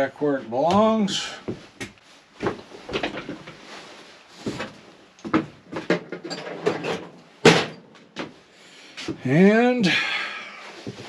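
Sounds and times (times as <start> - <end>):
tools clicking and knocking on workbench: 5.2 - 8.3.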